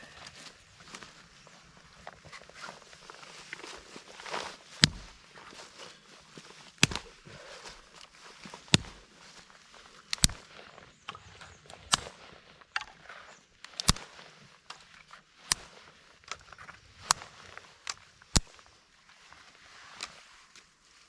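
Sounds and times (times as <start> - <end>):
soft rustling: 0.0 - 21.0
sharp cracks or knocks: 4.8 - 5.2, 6.8 - 7.1, 8.7 - 9.0.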